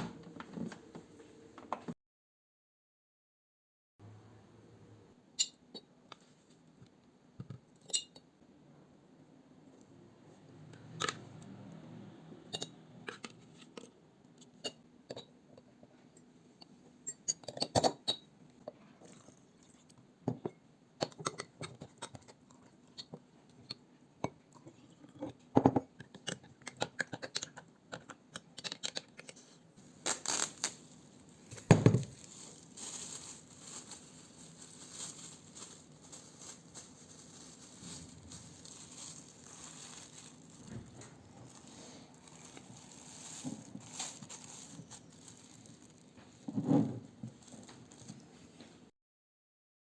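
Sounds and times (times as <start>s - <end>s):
rustling and crinkling: 29.8s - 48.9s
utensils and containers clinking: 30.0s - 48.3s.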